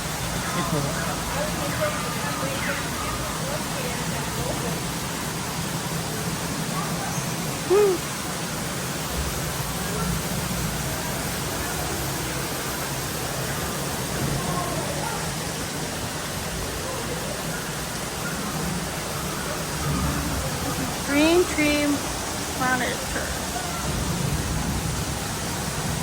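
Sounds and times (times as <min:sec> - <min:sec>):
faint distant voices: 0:00.0 - 0:26.0
indoor hall hiss: 0:00.0 - 0:26.0
loud hoot-like cry: 0:07.6 - 0:08.1.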